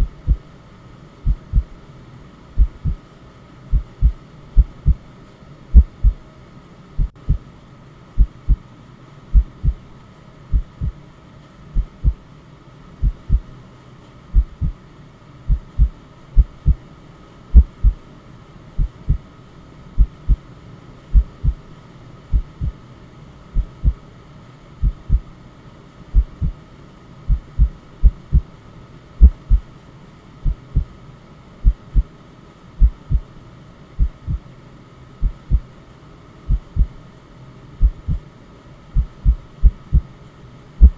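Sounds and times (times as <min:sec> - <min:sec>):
heartbeat thumps: 0:00.0 - 0:00.4, 0:01.2 - 0:01.7, 0:02.6 - 0:03.0, 0:03.7 - 0:05.0, 0:05.7 - 0:06.2, 0:07.0 - 0:07.5, 0:08.2 - 0:08.6, 0:09.3 - 0:09.8, 0:10.5 - 0:11.0, 0:11.8 - 0:12.2, 0:13.0 - 0:13.5, 0:14.3 - 0:14.8, 0:15.5 - 0:16.8, 0:17.5 - 0:18.0, 0:18.8 - 0:19.3, 0:20.0 - 0:20.4, 0:21.2 - 0:21.6, 0:22.3 - 0:22.8, 0:23.6 - 0:24.0, 0:24.8 - 0:25.3, 0:26.2 - 0:26.6, 0:27.3 - 0:28.5, 0:29.2 - 0:29.6, 0:30.4 - 0:30.9, 0:31.6 - 0:32.1, 0:32.8 - 0:33.3, 0:34.0 - 0:34.5, 0:35.2 - 0:35.7, 0:36.5 - 0:37.0, 0:37.8 - 0:38.2, 0:39.0 - 0:40.1
faint steady hiss: 0:00.0 - 0:40.9.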